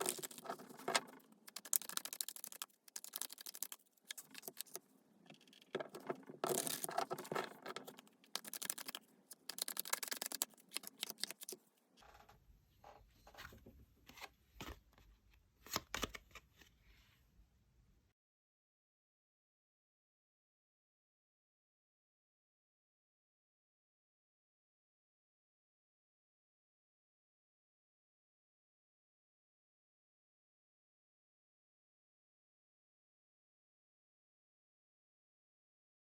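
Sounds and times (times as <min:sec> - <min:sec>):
cards shuffling: 0:00.0 - 0:04.8, 0:05.4 - 0:11.6.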